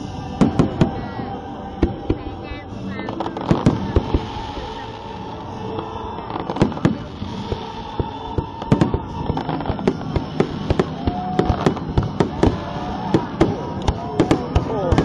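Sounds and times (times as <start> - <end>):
fireworks bursting: 0.0 - 15.0.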